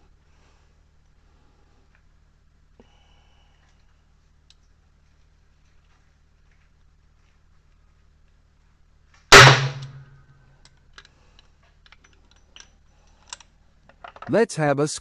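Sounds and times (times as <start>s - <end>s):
revolver shot: 9.3s - 10.0s
faint clicks: 10.6s - 14.3s.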